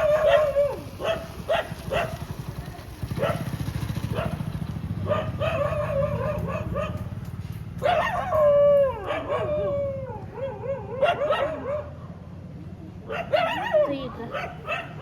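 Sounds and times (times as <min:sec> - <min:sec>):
dogs howling: 0:00.0 - 0:02.1, 0:05.1 - 0:07.0, 0:07.8 - 0:11.9
dogs barking: 0:00.0 - 0:02.4, 0:03.0 - 0:12.3, 0:13.0 - 0:15.0.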